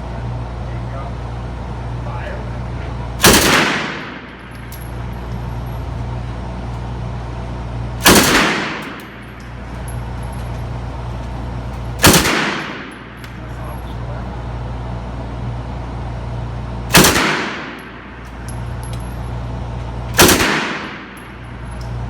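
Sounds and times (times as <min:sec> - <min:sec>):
steady low hum: 0:00.0 - 0:22.0
gunshots with echo: 0:03.2 - 0:04.3, 0:08.0 - 0:09.2, 0:12.0 - 0:13.2, 0:16.9 - 0:18.1, 0:20.2 - 0:21.2.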